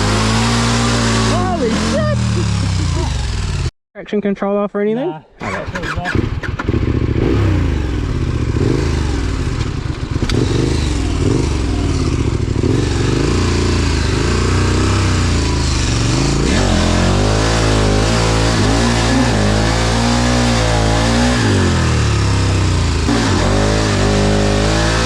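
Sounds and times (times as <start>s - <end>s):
dirt bike engine revving: 0.0s - 3.7s, 5.4s - 25.0s.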